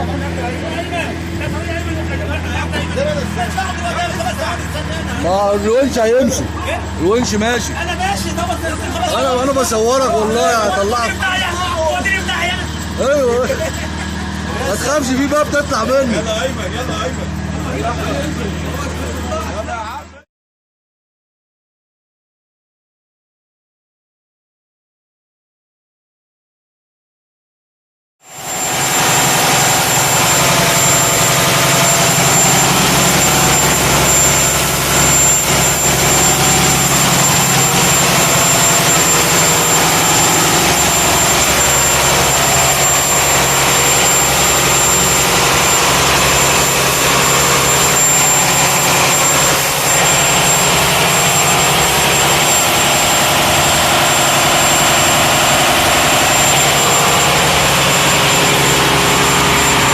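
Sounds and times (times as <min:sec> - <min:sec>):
boat engine running: 0:00.0 - 0:19.9, 0:28.3 - 0:59.9
thin high whine: 0:28.3 - 0:59.9.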